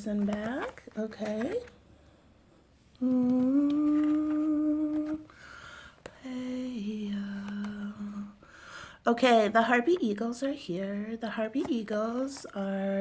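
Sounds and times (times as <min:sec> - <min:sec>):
woman humming: 0:03.0 - 0:05.3.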